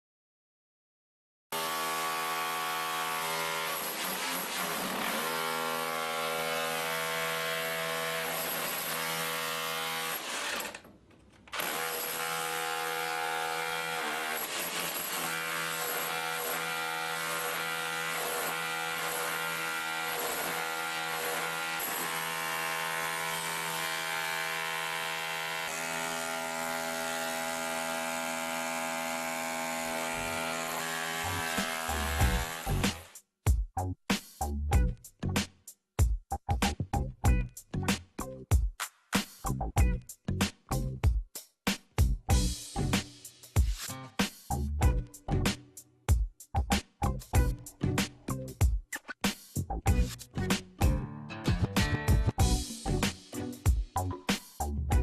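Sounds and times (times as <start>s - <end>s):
rotary hammer drilling into concrete: 1.6s - 10.9s, 11.5s - 33.2s.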